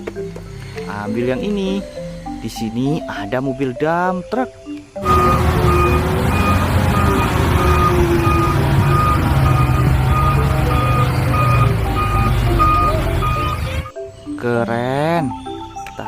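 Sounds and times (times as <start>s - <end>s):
reversing alarm beeping: 5.0s - 13.9s
truck engine running: 5.0s - 13.9s.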